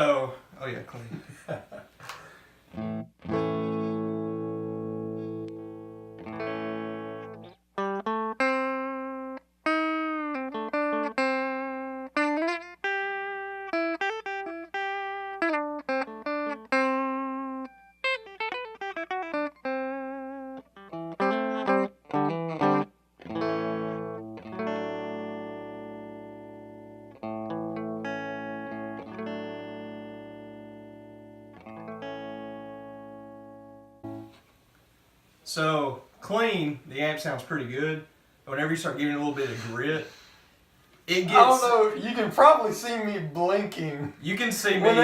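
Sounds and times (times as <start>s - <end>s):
clean electric guitar: 2.7s - 34.6s.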